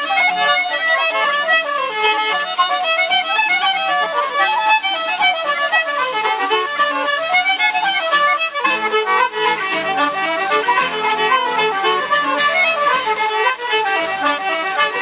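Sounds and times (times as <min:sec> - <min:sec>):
fiddle playing fast melody: 0:00.0 - 0:15.0
band accompaniment: 0:08.6 - 0:15.0.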